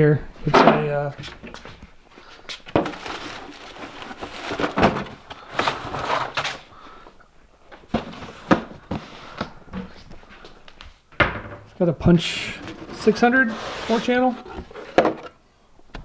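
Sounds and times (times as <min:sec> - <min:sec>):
rustling: 0:01.1 - 0:07.1, 0:11.6 - 0:15.4.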